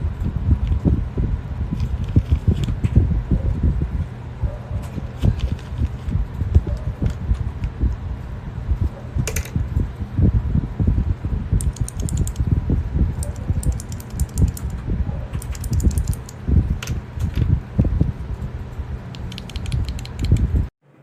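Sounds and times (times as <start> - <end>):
mechanical keyboard typing: 11.6 - 12.5, 13.2 - 14.8, 15.4 - 17.0, 19.1 - 20.5.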